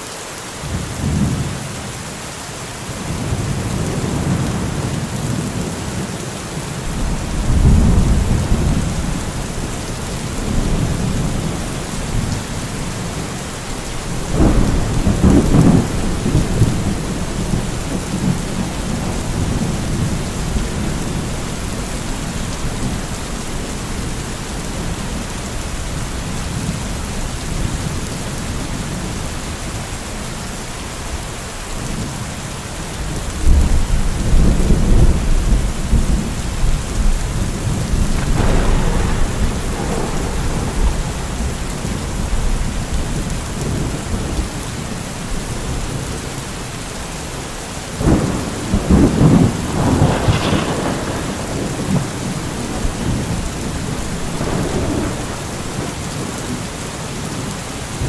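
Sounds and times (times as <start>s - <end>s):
steady rain falling: 0.0s - 58.0s
rolling thunder: 6.8s - 24.1s, 33.4s - 44.6s, 48.0s - 56.7s.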